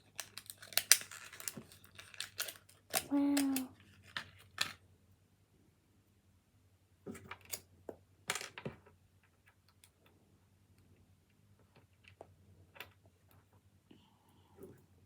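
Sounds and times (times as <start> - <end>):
small plastic pieces clicking: 0.0 - 4.8.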